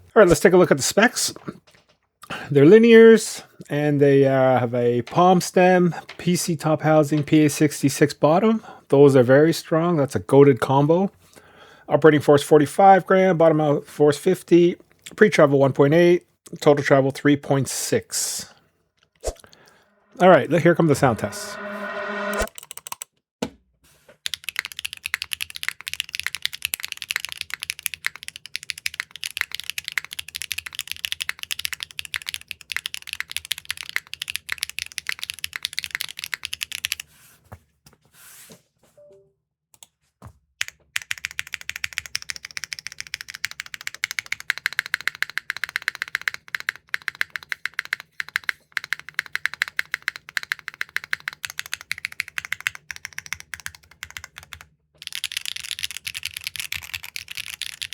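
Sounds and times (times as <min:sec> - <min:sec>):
fast typing on mechanical keyboard: 0:22.5 - 0:23.1, 0:24.3 - 0:37.1, 0:40.6 - 0:57.9.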